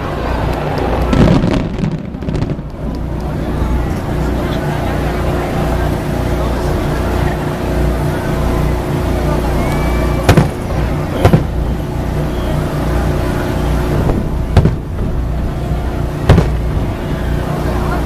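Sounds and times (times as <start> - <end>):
firework bangs: 0.0 - 4.4, 10.1 - 17.4
steady background noise: 0.0 - 18.0.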